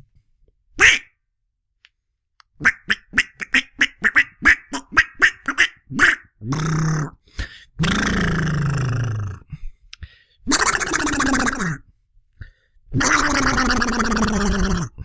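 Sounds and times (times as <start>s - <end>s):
man imitating animal calls: 2.6s - 7.2s, 7.8s - 9.6s, 10.4s - 11.9s, 12.9s - 15.0s.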